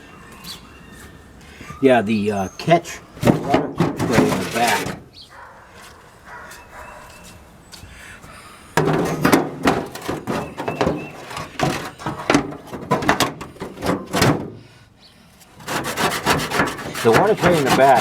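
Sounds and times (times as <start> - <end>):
scraper rasping on metal: 3.2 - 5.0, 15.6 - 18.0.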